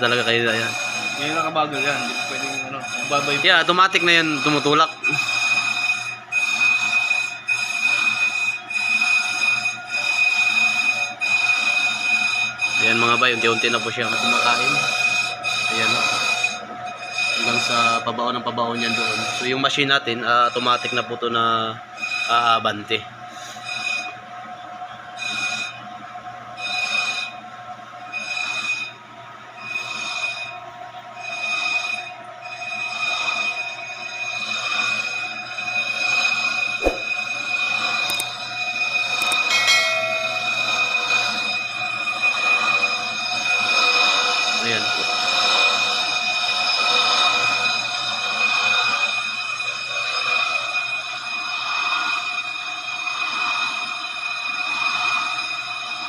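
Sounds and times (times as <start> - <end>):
lathe cutting bit squealing: 0.0 - 18.1, 18.7 - 19.6, 20.4 - 21.2, 22.0 - 22.4, 29.6 - 30.6, 39.2 - 41.7.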